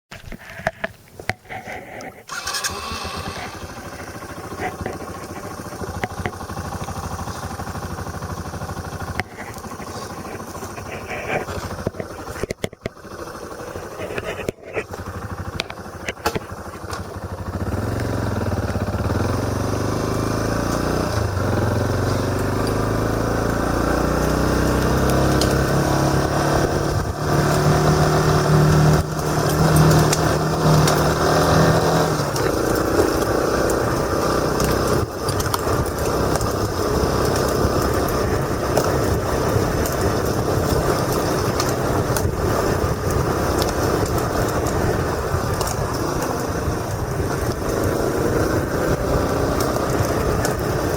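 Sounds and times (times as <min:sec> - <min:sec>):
motorcycle engine accelerating: 0:00.4 - 0:50.9
wind noise on camera: 0:24.7 - 0:50.9.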